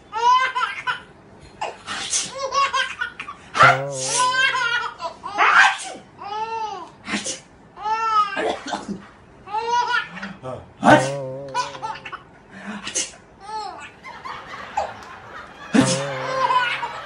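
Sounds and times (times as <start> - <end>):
baby laughing: 10.9 - 12.1, 14.8 - 17.0.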